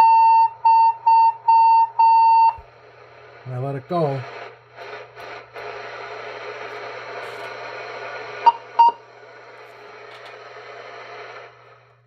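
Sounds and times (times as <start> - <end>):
low steady hum: 0.0 - 12.0
radio static hiss: 2.7 - 12.0.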